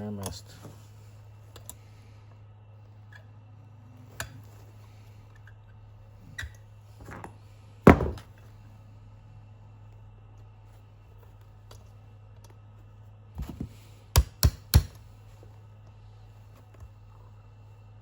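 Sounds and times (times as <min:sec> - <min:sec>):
steady low hum: 0:00.0 - 0:18.0
hand tool knocks and clicks: 0:07.9 - 0:08.3, 0:13.4 - 0:15.0
heavy thump: 0:07.9 - 0:08.3.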